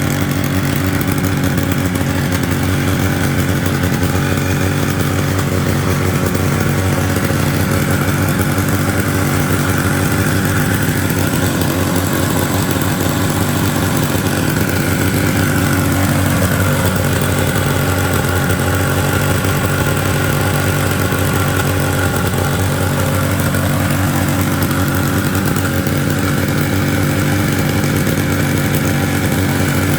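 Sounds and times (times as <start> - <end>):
chainsaw engine running: 0.0 - 29.9.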